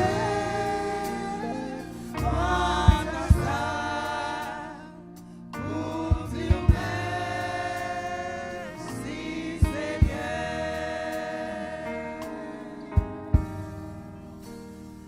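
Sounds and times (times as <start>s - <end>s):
gospel choir singing: 0.0s - 14.3s
low thumps: 2.2s - 3.9s.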